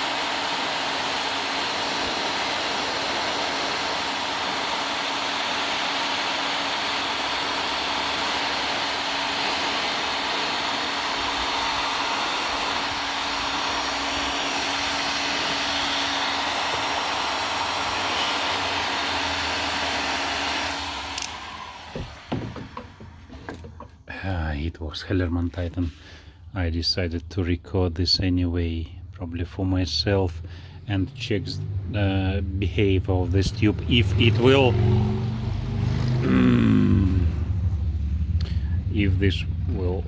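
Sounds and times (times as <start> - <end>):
heat gun blowing: 0.0 - 23.9, 33.6 - 37.4.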